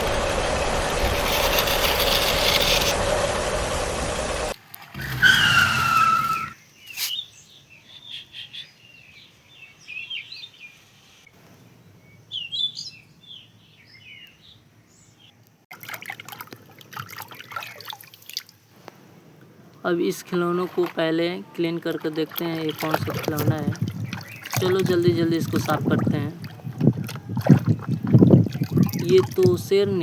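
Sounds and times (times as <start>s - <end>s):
crackling rustle: 0.0s - 5.1s
loud falling squeal: 0.0s - 6.6s
birds chirping: 0.0s - 15.4s, 19.6s - 30.0s.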